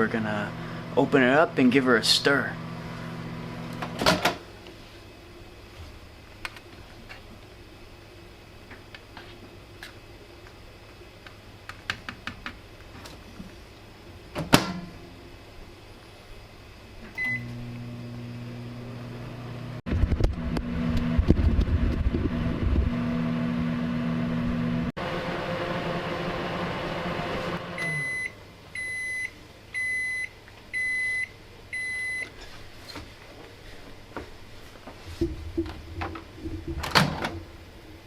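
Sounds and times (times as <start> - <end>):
microwave humming: 0.0 - 32.4, 33.4 - 38.0
microwave beep: 17.2 - 17.6, 27.7 - 32.3.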